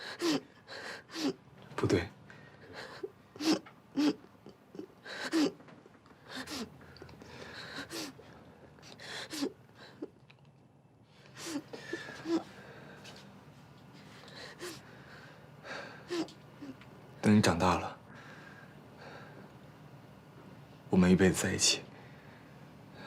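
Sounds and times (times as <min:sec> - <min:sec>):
person crying and sniffing: 0:00.0 - 0:01.4, 0:02.7 - 0:05.6, 0:06.3 - 0:06.7, 0:07.6 - 0:08.2, 0:09.1 - 0:10.1, 0:11.3 - 0:12.5.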